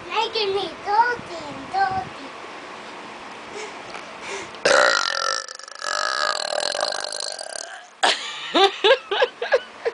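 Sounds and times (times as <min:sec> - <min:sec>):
person burping: 0:04.6 - 0:08.0.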